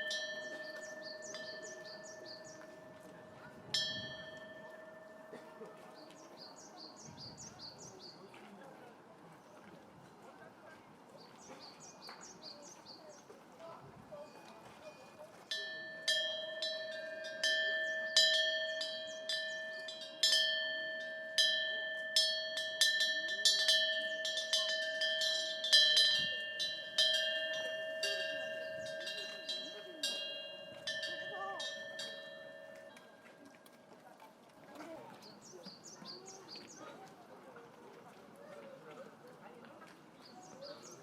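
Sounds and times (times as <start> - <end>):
wind bell ringing: 0.0 - 8.0, 14.1 - 34.1.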